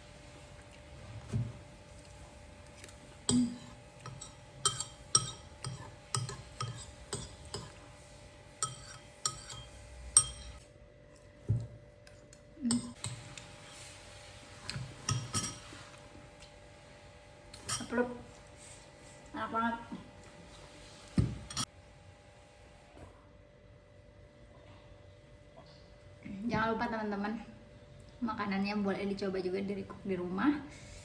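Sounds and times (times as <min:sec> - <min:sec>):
spoon clinking against bowl: 0:03.3 - 0:07.8, 0:08.6 - 0:10.6, 0:15.1 - 0:15.7, 0:17.6 - 0:17.9.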